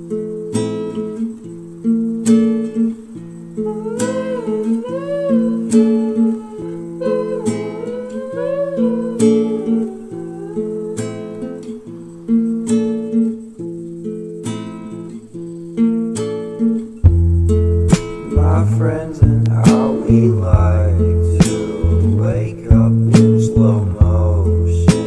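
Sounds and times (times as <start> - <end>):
strummed acoustic guitar chords: 10.4 - 25.0.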